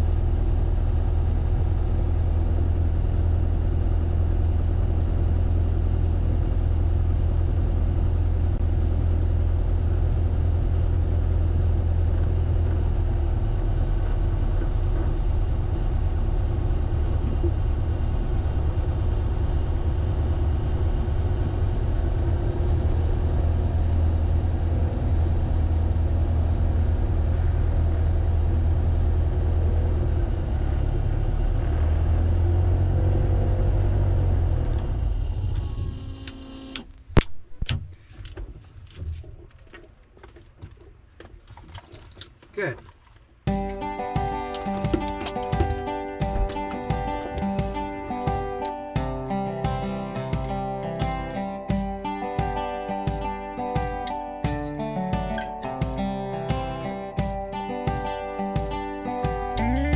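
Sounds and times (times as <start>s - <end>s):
propeller aircraft engine droning: 0.0s - 36.7s.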